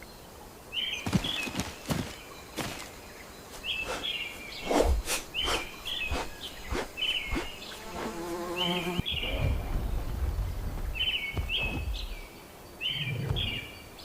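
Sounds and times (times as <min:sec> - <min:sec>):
bird chirping call: 0:00.8 - 0:09.9.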